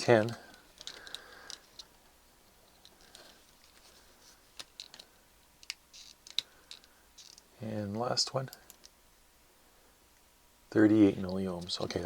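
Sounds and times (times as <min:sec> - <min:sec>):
test probes clicking on pins: 0:08.4 - 0:09.0.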